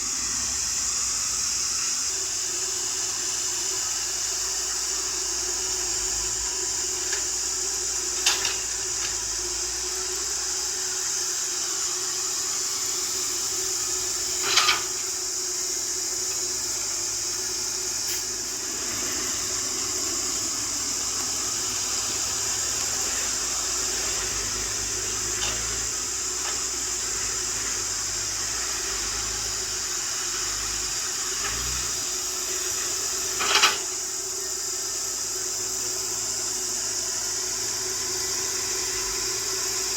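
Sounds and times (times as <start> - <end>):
excavator engine and hydraulics: 0.0 - 39.9.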